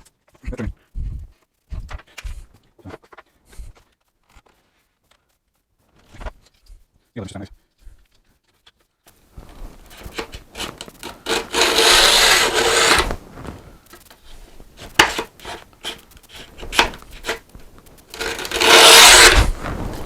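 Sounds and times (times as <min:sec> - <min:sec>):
hand tool scraping wood: 0:09.8 - 0:13.2, 0:14.3 - 0:19.6.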